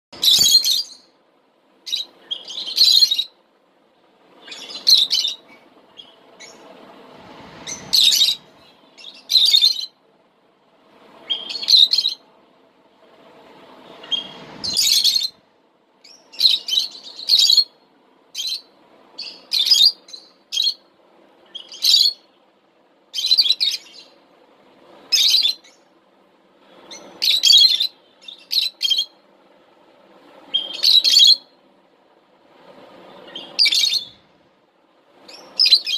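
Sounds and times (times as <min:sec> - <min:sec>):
lovebirds chirping: 0:00.2 - 0:01.2, 0:01.8 - 0:03.4, 0:04.3 - 0:10.0, 0:11.1 - 0:12.3, 0:13.7 - 0:15.4, 0:16.0 - 0:22.4, 0:23.1 - 0:24.2, 0:25.1 - 0:25.9, 0:26.6 - 0:29.2, 0:30.5 - 0:31.6, 0:33.0 - 0:34.2, 0:35.2 - 0:35.9.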